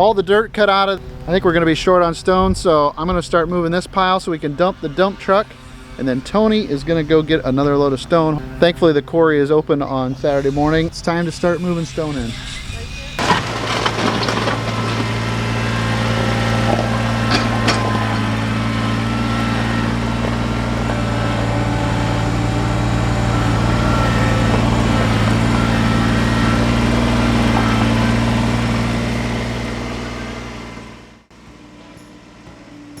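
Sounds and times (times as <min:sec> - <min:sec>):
diesel engine running: 0:00.0 - 0:33.0
stones clinking: 0:13.2 - 0:18.7.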